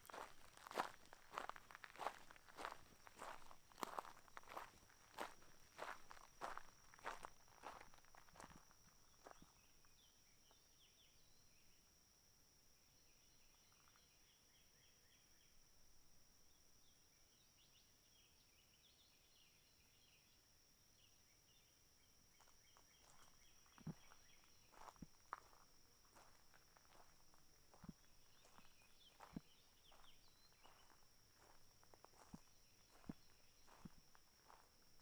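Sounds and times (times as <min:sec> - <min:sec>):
footsteps: 0:00.0 - 0:08.6
faint chirping: 0:22.4 - 0:35.0.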